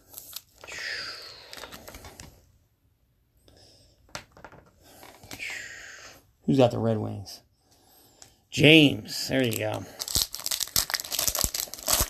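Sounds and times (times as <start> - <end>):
foil wrapper crinkling: 0.0 - 0.8, 9.4 - 12.0.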